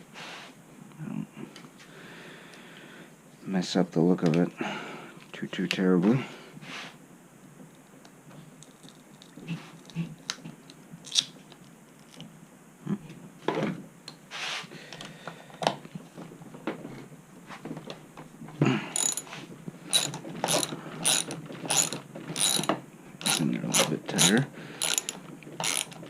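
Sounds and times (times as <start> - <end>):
metal parts clicking and knocking: 18.9 - 26.0
ratchet clicking: 19.0 - 19.3, 19.9 - 26.0.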